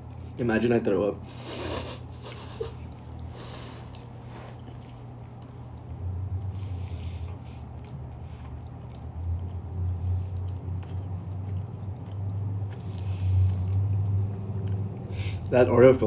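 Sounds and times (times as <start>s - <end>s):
moist mouth sounds: 1.3s - 4.8s
chewing pastry: 1.6s - 15.5s.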